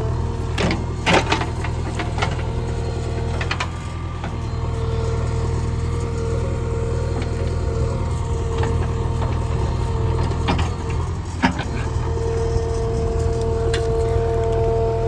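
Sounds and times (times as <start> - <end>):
diesel engine running: 0.0 - 15.0
high whine: 11.6 - 15.0.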